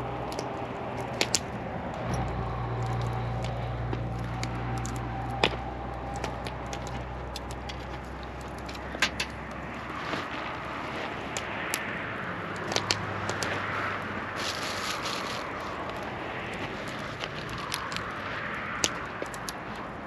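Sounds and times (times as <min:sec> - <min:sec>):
low steady hum: 0:00.0 - 0:13.3
wood fire crackling and popping: 0:00.0 - 0:20.0.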